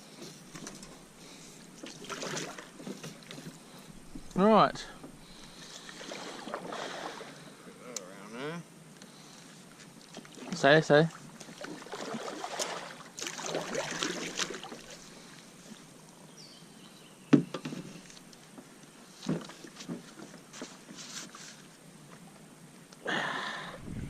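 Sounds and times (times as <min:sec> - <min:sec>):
water splashing around kayak: 0:00.8 - 0:07.5, 0:10.0 - 0:15.4.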